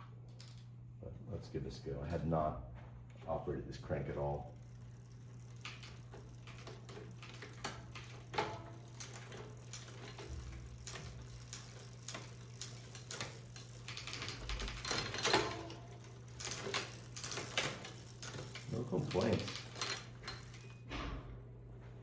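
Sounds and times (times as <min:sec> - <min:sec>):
bicycle gears clicking: 0:00.0 - 0:00.7, 0:03.8 - 0:20.9
bicycle chain running over sprockets: 0:03.8 - 0:20.8.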